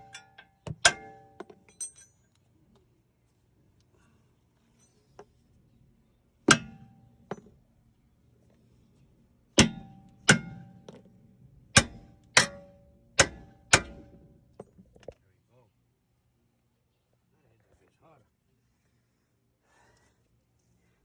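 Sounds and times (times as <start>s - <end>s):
hammer striking metal: 6.5s - 7.5s, 9.6s - 11.0s, 11.7s - 14.2s.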